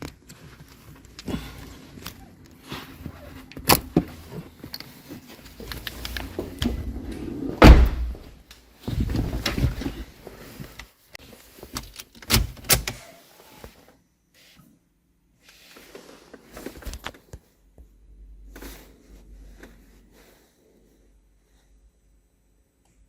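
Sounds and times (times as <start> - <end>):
heavy thud: 6.6 - 9.9.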